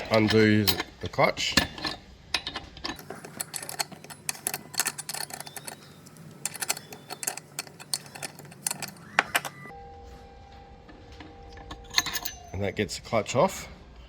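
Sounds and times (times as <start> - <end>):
metallic clicking and ticking: 0.0 - 9.7.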